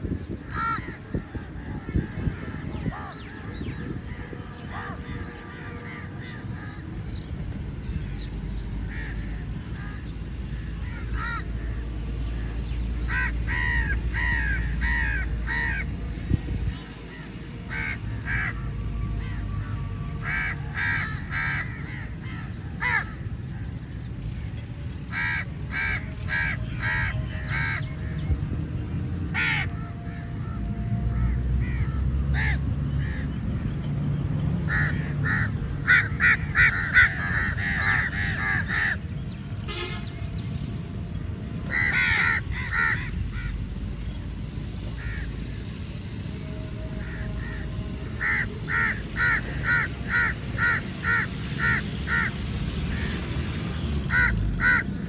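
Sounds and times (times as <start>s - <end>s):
crows cawing: 0.4s - 1.0s, 10.8s - 11.8s, 13.1s - 15.9s, 17.7s - 18.6s, 20.2s - 23.3s, 25.1s - 27.9s, 29.3s - 30.6s, 31.2s - 33.2s, 34.7s - 39.0s, 41.7s - 43.6s, 47.0s - 52.4s, 54.1s - 54.9s.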